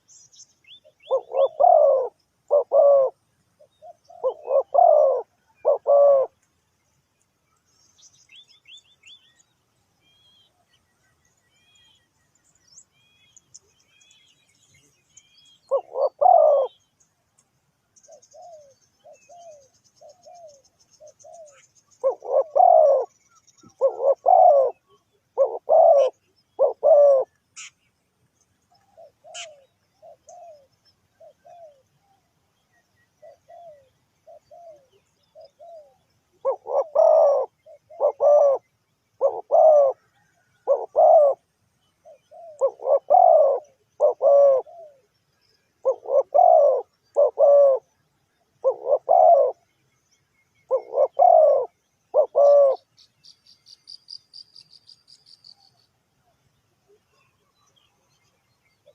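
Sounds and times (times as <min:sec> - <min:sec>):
small birds chirping: 0:00.0 - 0:58.9
dove cooing: 0:00.6 - 0:06.4, 0:15.6 - 0:16.9, 0:18.1 - 0:27.7, 0:28.7 - 0:32.2, 0:33.2 - 0:45.1, 0:45.8 - 0:49.6, 0:50.7 - 0:52.9.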